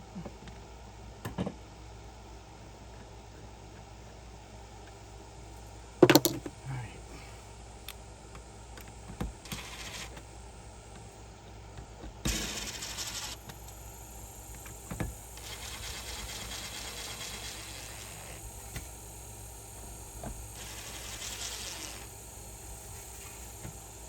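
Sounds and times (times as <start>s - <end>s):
faint hiss: 12.2s - 24.0s.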